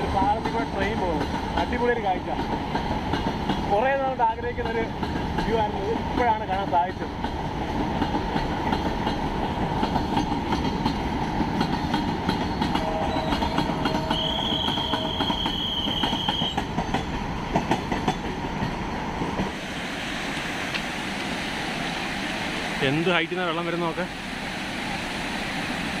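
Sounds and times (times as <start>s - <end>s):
train wheels clacking on rails: 0.0s - 19.6s
high wheel squeal: 12.4s - 16.6s
waterfall rushing: 19.5s - 26.0s.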